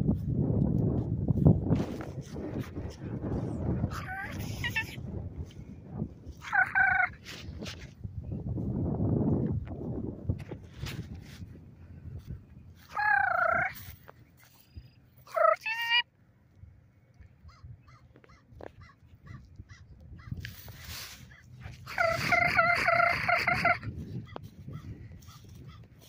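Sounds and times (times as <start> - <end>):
large birds calling harshly: 6.4 - 7.2, 12.9 - 13.9, 17.4 - 20.4, 21.2 - 25.9.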